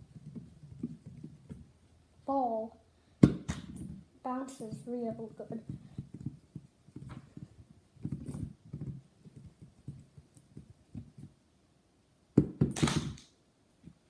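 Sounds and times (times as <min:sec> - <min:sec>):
putty ball thudding on hard surface: 0:03.2 - 0:04.0.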